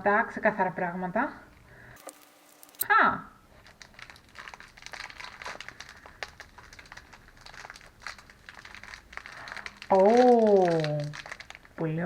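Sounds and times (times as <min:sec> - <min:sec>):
packaging crinkling and rustling: 0:02.0 - 0:02.8, 0:03.6 - 0:11.8.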